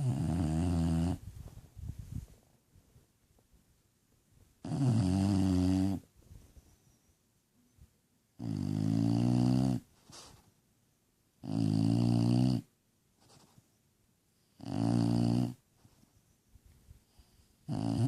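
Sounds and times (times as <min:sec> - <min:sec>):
dog snoring: 0:00.0 - 0:01.2, 0:04.6 - 0:06.0, 0:08.4 - 0:09.9, 0:11.4 - 0:12.7, 0:14.5 - 0:15.6, 0:17.6 - 0:18.0.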